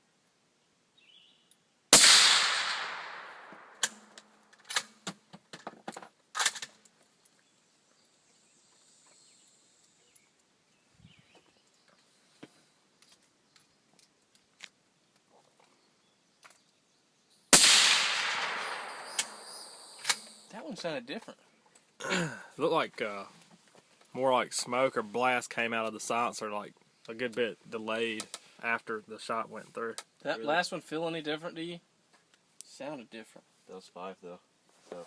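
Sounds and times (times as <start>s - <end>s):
suppressed rifle shot with echo: 1.9s - 4.2s, 17.5s - 20.5s.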